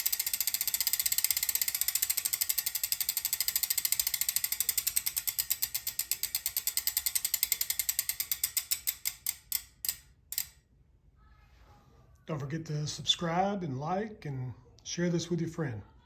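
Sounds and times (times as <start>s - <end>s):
bicycle freehub clicking: 0.0s - 10.6s.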